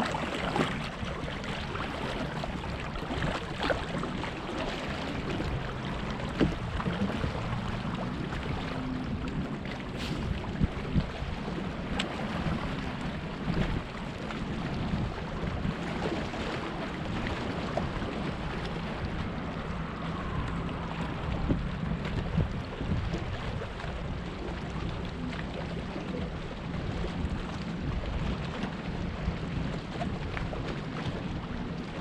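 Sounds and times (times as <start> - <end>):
water lapping against kayak: 0.0 - 32.0
wind buffeting microphone: 0.0 - 32.0.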